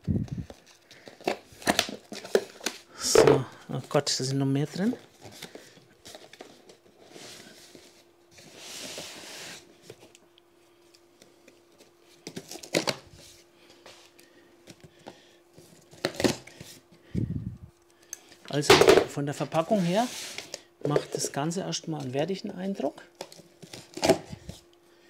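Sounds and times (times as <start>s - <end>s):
cardboard box rustling and scraping: 6.1s - 9.9s, 19.6s - 20.5s.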